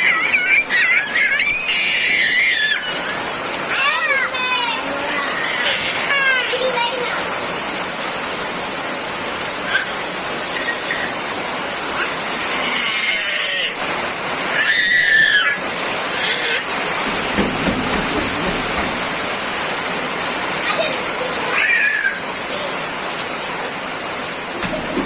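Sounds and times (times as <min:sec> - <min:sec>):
heavy rain falling: 0:00.0 - 0:25.0
high-pitched animal calls: 0:09.6 - 0:11.3.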